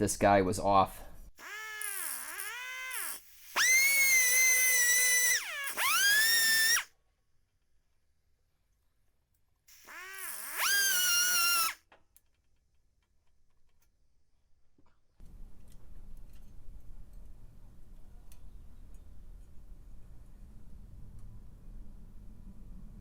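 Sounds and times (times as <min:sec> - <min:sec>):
power tool motor whining: 0:01.4 - 0:06.9, 0:09.7 - 0:11.8
low hum with faint clicks: 0:14.8 - 0:23.0.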